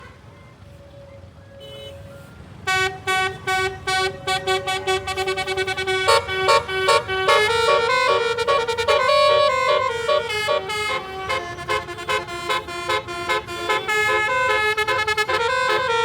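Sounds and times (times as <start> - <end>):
musical air horn: 2.7 - 16.0.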